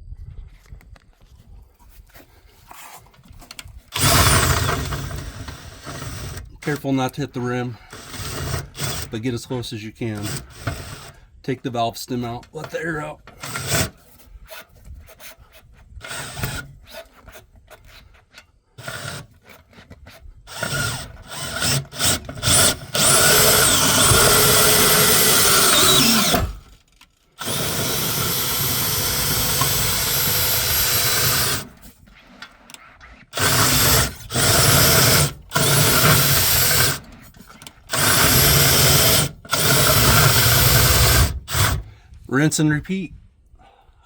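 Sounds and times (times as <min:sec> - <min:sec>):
electric motor running: 0:03.9 - 0:06.4, 0:20.5 - 0:26.7, 0:27.4 - 0:31.8, 0:33.3 - 0:37.1, 0:37.9 - 0:41.8.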